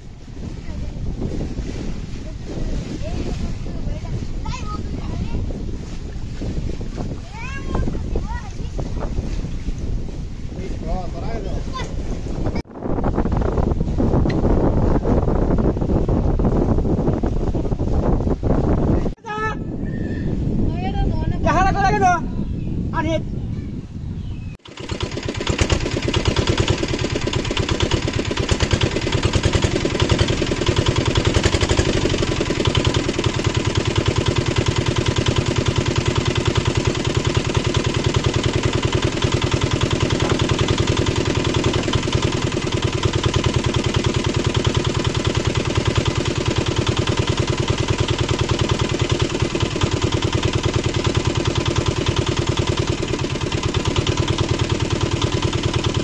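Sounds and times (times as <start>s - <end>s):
boat engine running: 0.0s - 19.2s, 24.5s - 56.0s.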